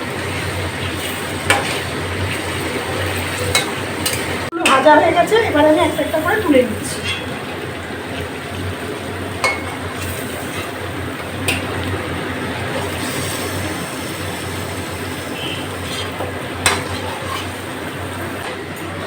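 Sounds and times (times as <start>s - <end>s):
chicken sizzling in hot oil: 0.0s - 19.0s
metal utensil clinking on pan: 1.4s - 1.9s, 3.4s - 4.9s, 6.9s - 7.4s, 9.4s - 10.8s, 15.8s - 17.6s.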